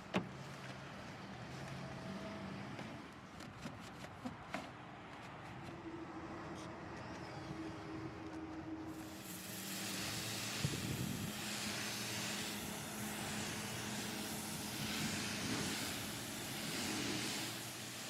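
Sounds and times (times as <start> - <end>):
hissing water jet: 8.9 - 18.0
pressure washer motor hum: 9.0 - 18.0.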